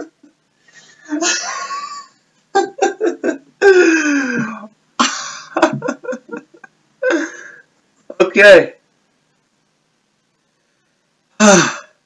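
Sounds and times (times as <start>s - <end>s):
person laughing: 1.1s - 7.6s.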